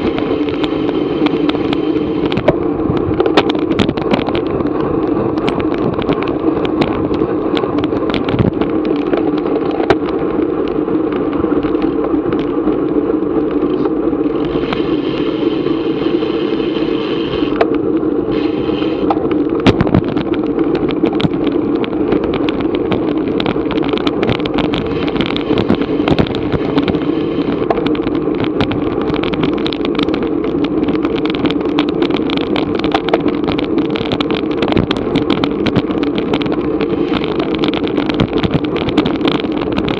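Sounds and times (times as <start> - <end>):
bicycle rattles and clicks: 0.0 - 39.9
wind buffeting microphone: 0.0 - 39.9
high hiss: 14.4 - 17.6, 18.3 - 19.1.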